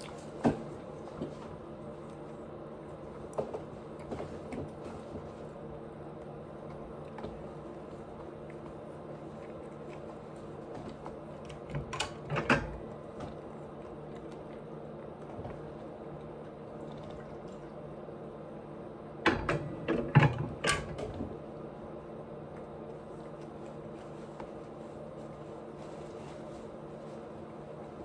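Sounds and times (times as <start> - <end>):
mouth clicks and chewing smacks: 0.0 - 0.4.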